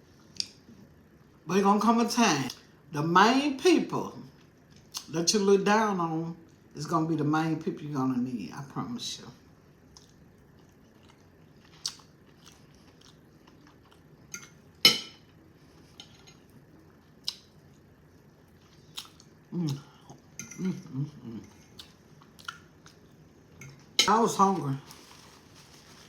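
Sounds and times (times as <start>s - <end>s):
chewing with sharp clicks: 9.9s - 14.5s, 21.7s - 23.0s.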